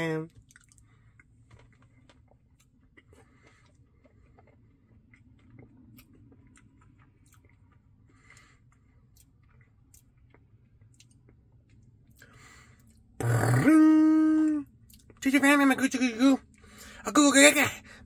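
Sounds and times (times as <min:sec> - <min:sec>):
faint chewing: 0:00.3 - 0:13.2.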